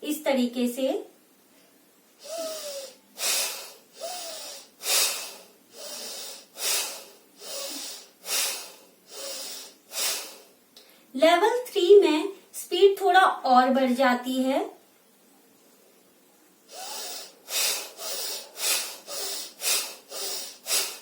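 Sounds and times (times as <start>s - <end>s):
woman breathing forcefully through nose: 2.2s - 11.1s, 16.7s - 21.0s.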